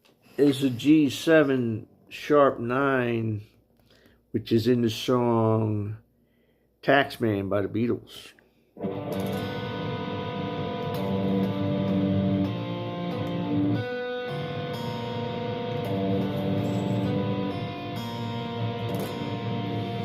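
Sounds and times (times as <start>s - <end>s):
electric guitar chord ringing: 8.8s - 20.0s.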